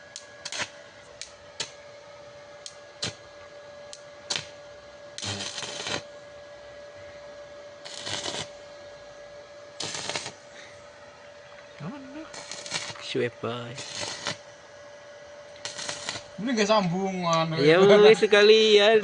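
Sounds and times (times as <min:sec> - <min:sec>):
welding arc crackling: 0:00.0 - 0:01.8, 0:02.6 - 0:03.2, 0:03.9 - 0:04.6, 0:05.2 - 0:06.1, 0:07.8 - 0:08.6, 0:09.8 - 0:10.4, 0:11.8 - 0:14.5, 0:15.5 - 0:16.5
welder steady hum: 0:00.0 - 0:19.0.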